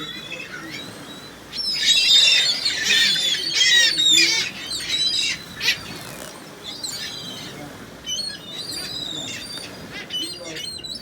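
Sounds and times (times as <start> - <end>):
gulls squawking: 0.0 - 11.0.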